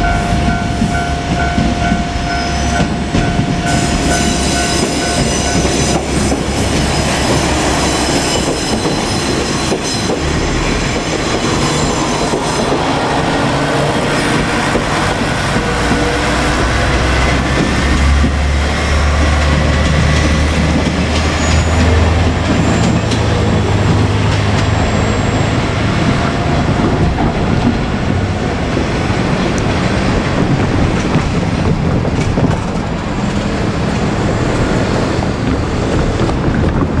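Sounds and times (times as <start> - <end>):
diesel train engine hum: 0.0 - 37.0
wheels on rails: 0.0 - 37.0
wheel squeals: 0.8 - 16.9, 20.8 - 26.3.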